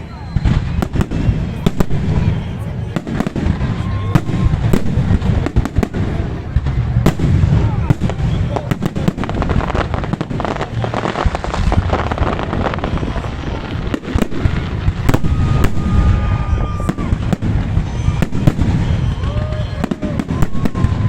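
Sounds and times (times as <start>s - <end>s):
fireworks bangs and crackles: 0.0s - 21.0s
fireworks whistling: 0.0s - 21.0s.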